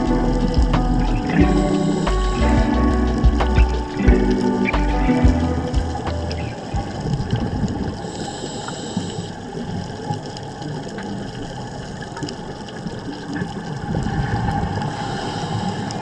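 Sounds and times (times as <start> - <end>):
muffled underwater water noise: 0.0 - 16.0.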